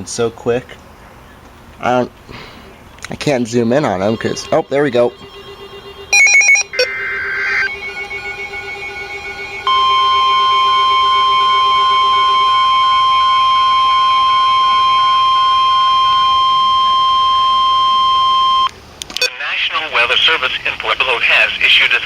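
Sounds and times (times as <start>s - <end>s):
faint pulsing beeps: 3.5s - 19.4s
loud steady alarm tone: 3.6s - 18.7s
warbling data tones: 3.8s - 18.7s.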